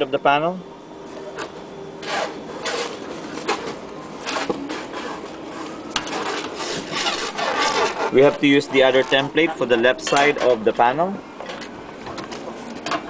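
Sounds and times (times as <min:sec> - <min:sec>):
scratching on sheet metal: 0:02.0 - 0:09.4.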